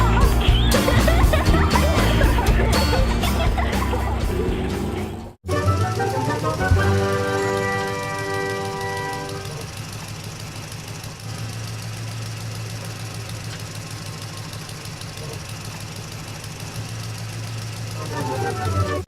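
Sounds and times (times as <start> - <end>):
background music: 0.0 - 9.5, 18.0 - 19.0
cartoon vehicle engine running: 0.0 - 19.0.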